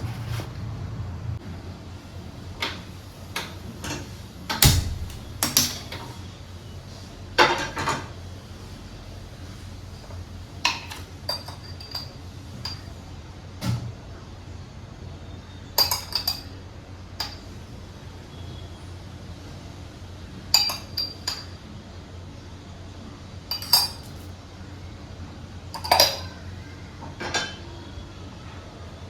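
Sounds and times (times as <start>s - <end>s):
pots and pans knocking and clinking: 15.8s - 16.5s, 25.8s - 26.3s.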